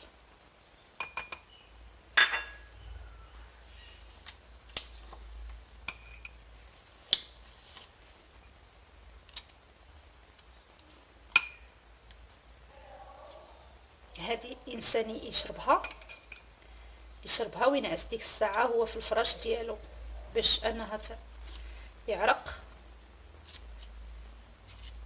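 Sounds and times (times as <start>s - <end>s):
teaspoon clinking against glass: 2.2s - 2.7s.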